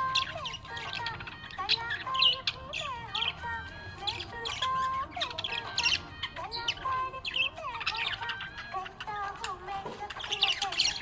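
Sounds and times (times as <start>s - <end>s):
budgerigars chirping and warbling: 0.0s - 11.0s.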